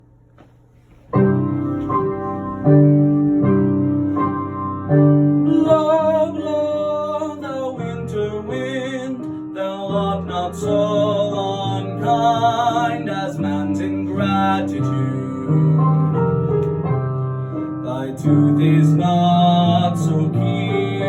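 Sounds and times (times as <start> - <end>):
piano chords: 1.0 - 21.0
classical singing voice: 4.8 - 21.0.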